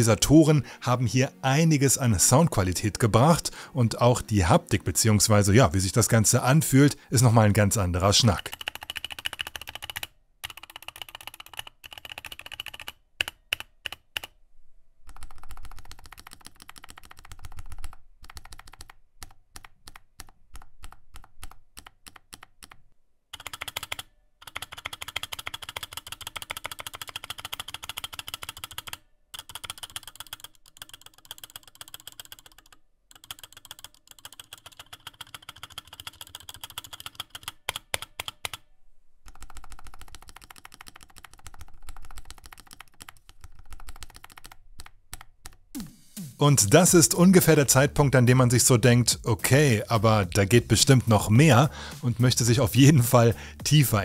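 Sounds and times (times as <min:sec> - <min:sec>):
mechanical keyboard typing: 0:07.4 - 0:14.4, 0:15.0 - 0:38.6, 0:39.2 - 0:45.7.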